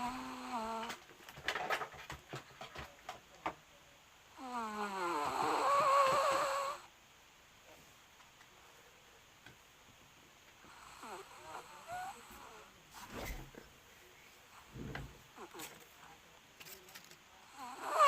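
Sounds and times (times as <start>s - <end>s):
dog whining moan: 17.6s - 18.0s.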